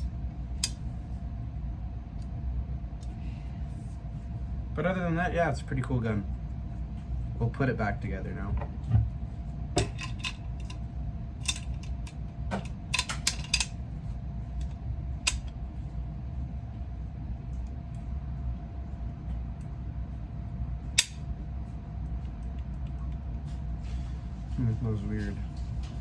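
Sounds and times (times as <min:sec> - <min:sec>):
steady low hum: 0:00.0 - 0:26.0
metallic clicks of rifle parts: 0:12.9 - 0:13.7.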